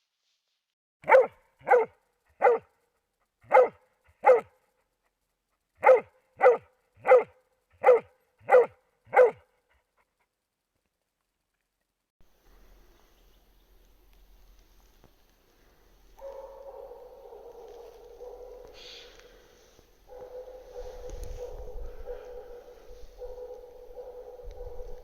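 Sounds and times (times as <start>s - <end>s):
dog barking sharply: 1.0s - 2.7s, 3.5s - 4.5s, 5.8s - 9.4s, 16.2s - 19.2s, 20.1s - 25.0s.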